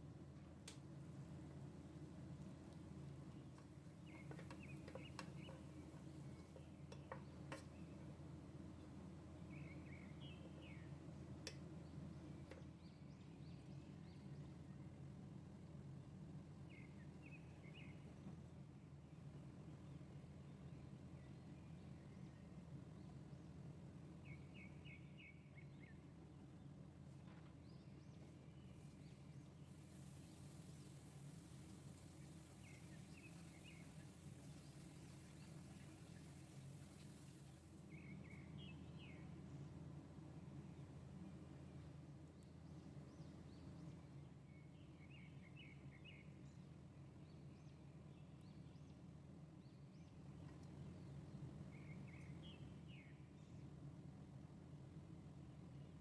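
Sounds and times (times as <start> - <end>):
faint sharp clicks: 0.6 - 0.9, 11.4 - 11.6.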